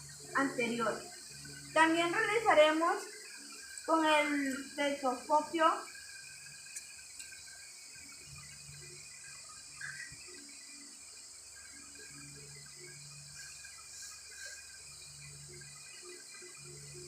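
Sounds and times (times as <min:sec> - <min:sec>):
steady hiss: 0:00.0 - 0:17.0.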